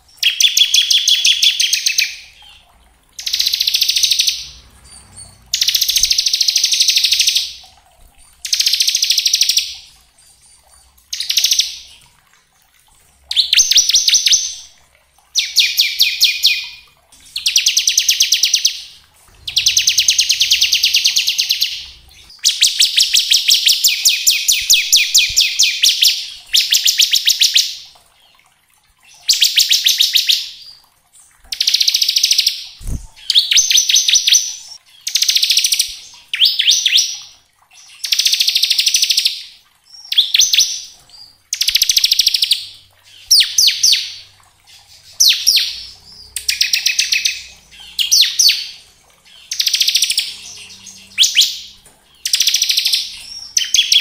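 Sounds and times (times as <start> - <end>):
bird singing rattling trill: 0.0 - 2.6, 3.2 - 7.6, 15.4 - 27.8, 45.2 - 54.0.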